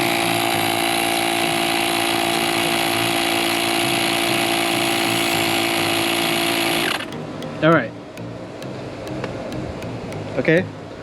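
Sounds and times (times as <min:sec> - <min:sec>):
air compressor humming: 0:00.0 - 0:07.1.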